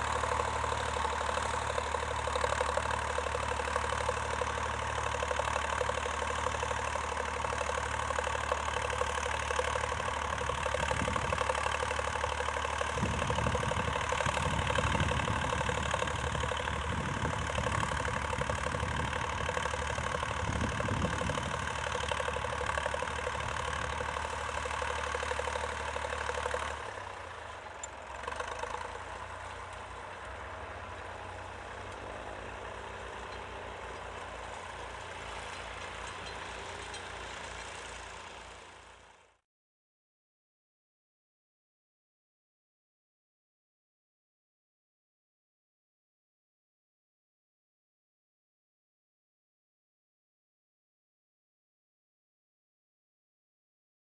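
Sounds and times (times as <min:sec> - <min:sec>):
tractor engine running: 0:00.0 - 0:39.4
low uneven rumble: 0:09.8 - 0:39.1.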